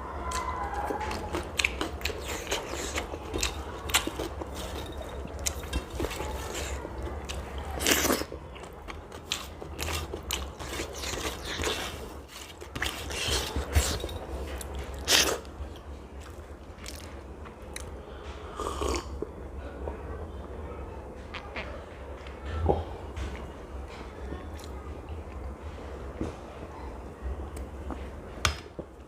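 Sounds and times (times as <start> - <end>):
steady low hum: 0.0 - 29.0
crunchy chewing: 0.3 - 17.9.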